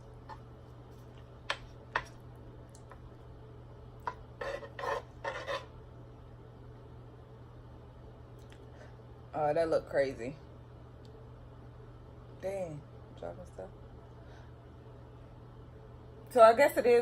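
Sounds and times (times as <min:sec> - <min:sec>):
utensils scraping a plate: 0:04.0 - 0:05.8.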